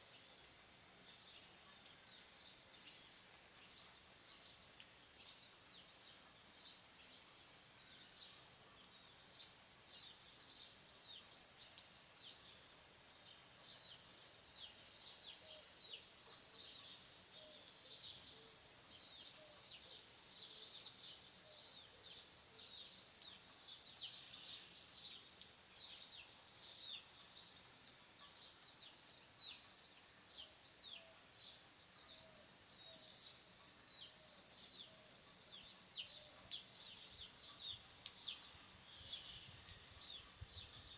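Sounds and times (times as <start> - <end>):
faint steady hiss: 0.0 - 40.9
small birds chirping: 0.0 - 40.9
soft lower bird calls: 32.1 - 40.9.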